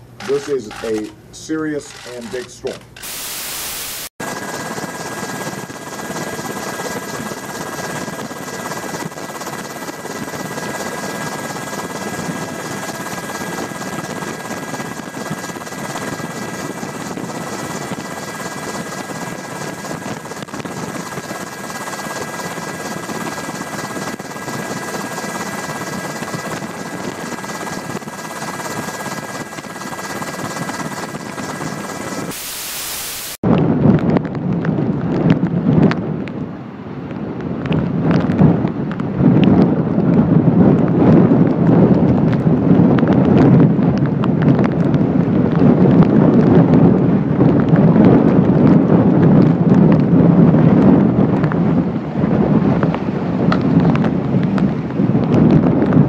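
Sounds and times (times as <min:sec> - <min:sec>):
mechanical drone with high whine: 0:00.0 - 0:36.1.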